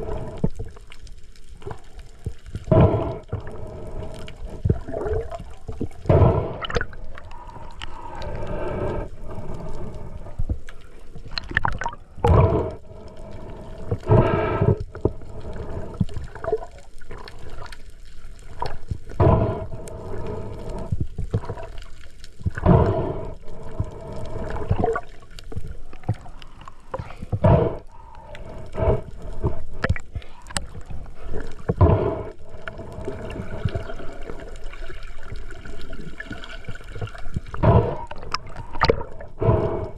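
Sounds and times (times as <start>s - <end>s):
water gurgling underwater: 1.6s - 9.0s, 11.2s - 12.8s, 15.8s - 17.8s, 18.4s - 28.0s, 28.8s - 39.9s.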